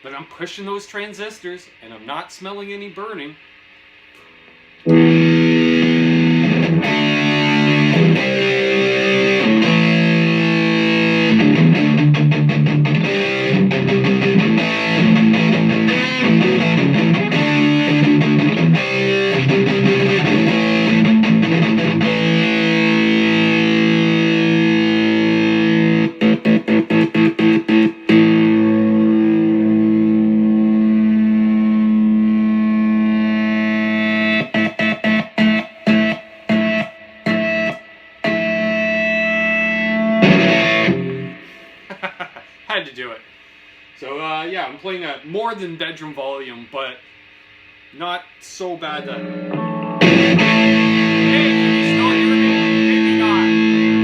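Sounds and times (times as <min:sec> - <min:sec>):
distorted electric guitar: 0:03.6 - 0:42.7, 0:48.8 - 0:54.0.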